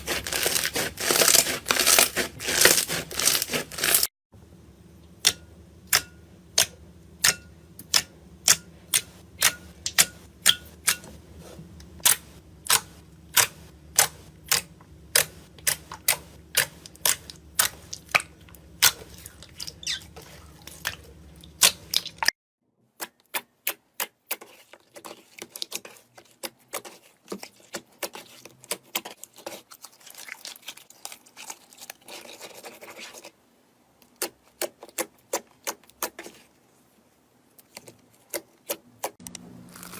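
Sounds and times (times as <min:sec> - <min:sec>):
low hum: 0:04.4 - 0:22.0.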